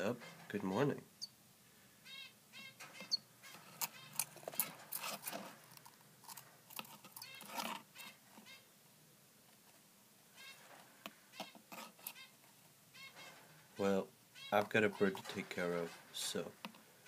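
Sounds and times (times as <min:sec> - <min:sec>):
nestling bird cheeping: 0:01.2 - 0:01.4, 0:02.0 - 0:04.4.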